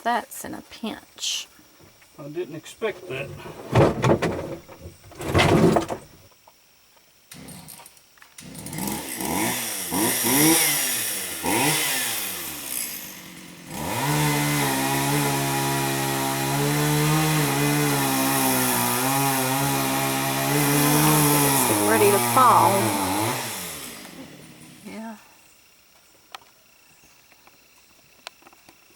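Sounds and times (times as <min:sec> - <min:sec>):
chainsaw starting and idling: 0:07.3 - 0:25.0.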